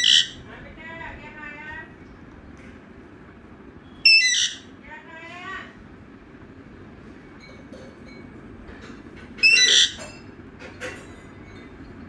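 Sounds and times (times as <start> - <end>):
parrot squawk: 0.0 - 0.4, 4.1 - 4.7, 9.4 - 10.1
faint bird chirps: 3.8 - 4.6.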